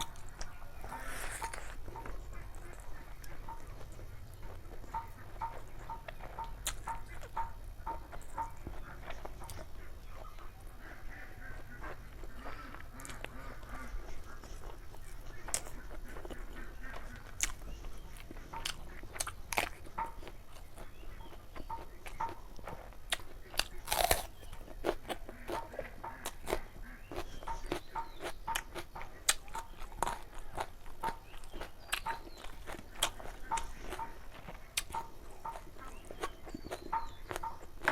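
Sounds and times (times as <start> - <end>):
wet mouth clicks: 0.0 - 1.8
biting and crunching food: 0.0 - 37.9.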